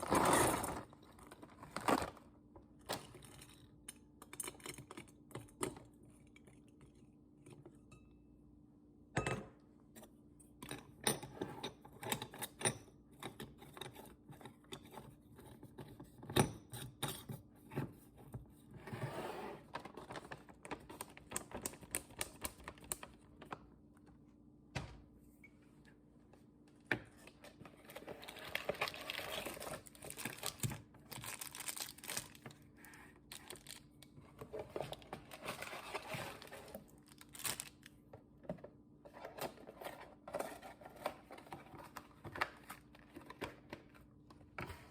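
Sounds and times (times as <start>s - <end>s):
plastic packaging crinkling: 27.8s - 34.2s, 34.9s - 38.0s.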